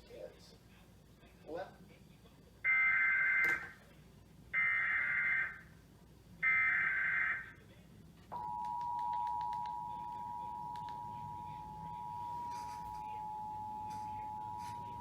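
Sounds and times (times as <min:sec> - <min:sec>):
steady two-tone attention signal: 0:08.4 - 0:15.0.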